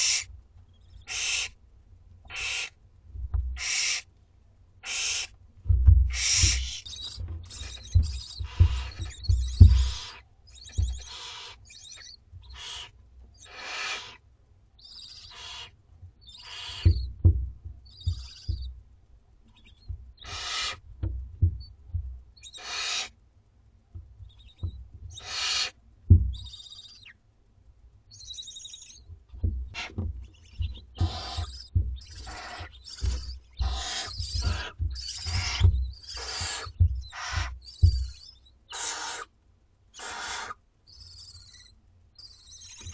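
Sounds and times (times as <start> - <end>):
owlets hissing calls: 0.0 - 0.3, 1.1 - 1.6, 2.3 - 2.8, 3.6 - 4.1, 4.8 - 5.3, 6.1 - 14.2, 14.9 - 15.7, 16.3 - 17.0, 20.2 - 20.8, 22.4 - 23.1, 25.2 - 27.1, 29.8 - 39.3, 40.0 - 42.9
thin chittering calls: 1.0 - 1.5, 2.3 - 2.7, 3.6 - 4.0, 4.8 - 5.3, 6.1 - 14.2, 14.8 - 17.1, 17.8 - 18.7, 19.6 - 20.8, 22.4 - 23.1, 24.3 - 25.7, 26.3 - 27.2, 28.1 - 29.0, 29.8 - 39.3, 39.9 - 42.9
thumps in nest box: 5.7 - 10.1, 10.7 - 11.1, 16.8 - 18.7, 29.4 - 38.1.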